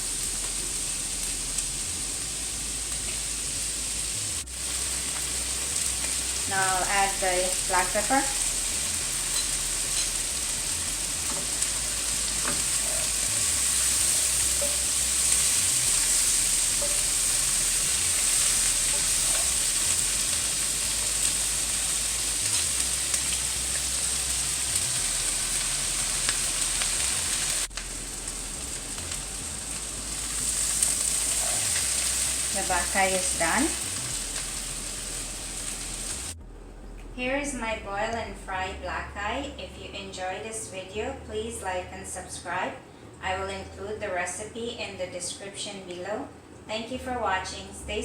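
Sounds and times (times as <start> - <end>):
peas sizzling in hot oil: 0.0 - 36.4.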